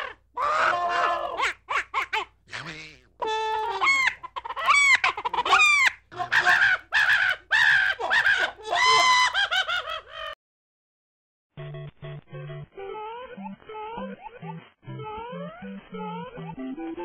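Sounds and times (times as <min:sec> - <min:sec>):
high-pitched animal calls: 0:00.0 - 0:10.3.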